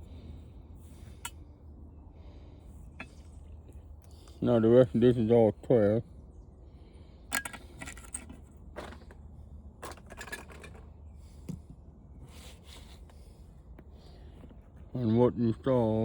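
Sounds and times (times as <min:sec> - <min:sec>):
low steady hum: 0:00.0 - 0:16.0
fan parts clinking and clicking: 0:02.9 - 0:04.5, 0:07.3 - 0:11.6.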